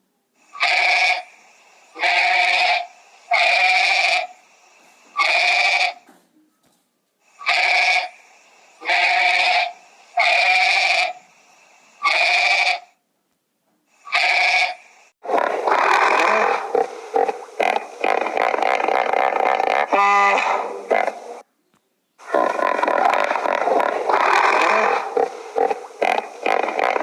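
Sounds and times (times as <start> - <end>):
animal bleating: 0.6 - 1.3, 2.0 - 4.3, 5.1 - 6.0, 7.4 - 8.1, 8.8 - 11.2, 12.0 - 12.9, 14.1 - 14.8, 17.6 - 20.7, 22.3 - 27.0.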